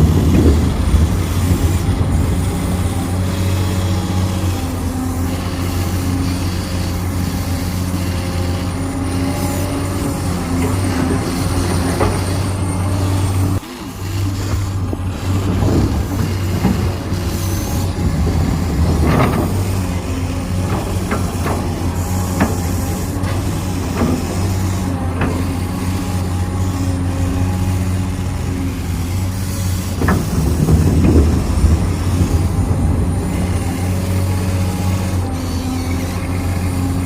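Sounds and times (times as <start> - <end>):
electric motors humming: 0.0 - 37.0.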